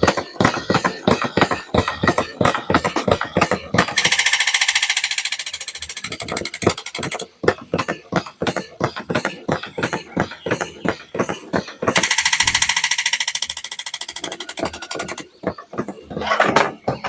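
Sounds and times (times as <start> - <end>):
clicking and tapping: 1.4 - 17.0
fast even rattle: 4.0 - 7.2, 11.9 - 15.3.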